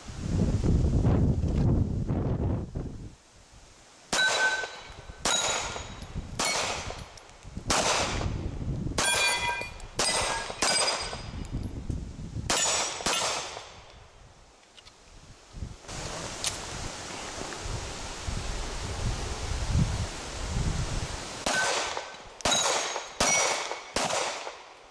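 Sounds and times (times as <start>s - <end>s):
bullets clanging steel targets: 4.1s - 7.9s, 9.0s - 11.7s, 12.5s - 14.0s, 21.4s - 24.6s.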